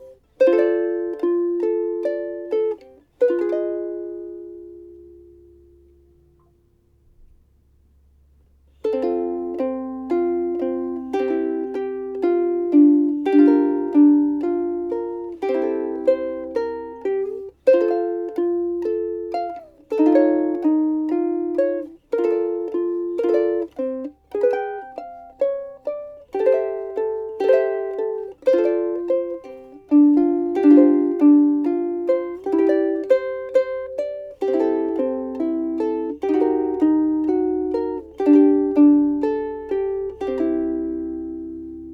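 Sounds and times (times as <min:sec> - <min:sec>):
ukulele plucked and strummed: 0:00.0 - 0:07.3, 0:08.7 - 0:41.9.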